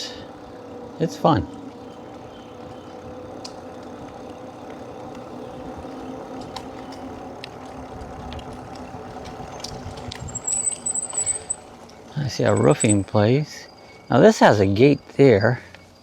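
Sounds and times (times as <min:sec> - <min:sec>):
tyre and wind noise: 0:02.1 - 0:13.0
light ticks: 0:03.4 - 0:05.3
insect trill: 0:10.2 - 0:16.0.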